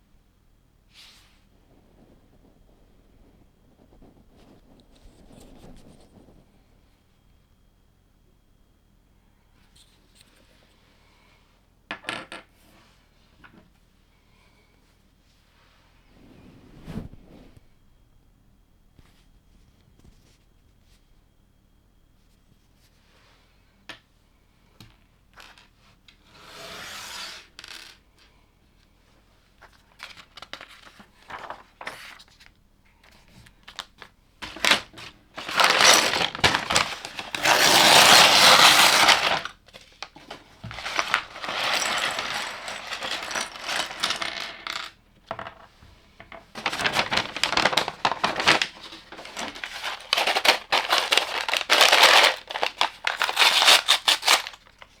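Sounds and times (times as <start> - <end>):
plastic toy bricks clattering: 34.4 - 55.0.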